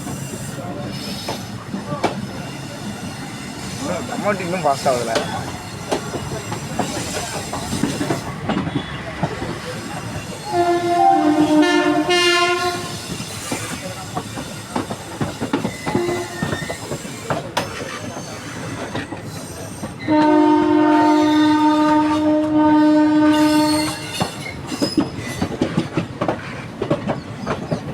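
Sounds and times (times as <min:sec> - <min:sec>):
train clickety-clack over rail joints: 0:00.0 - 0:27.9
locomotive horn: 0:10.4 - 0:13.1, 0:15.9 - 0:16.6, 0:20.1 - 0:24.2.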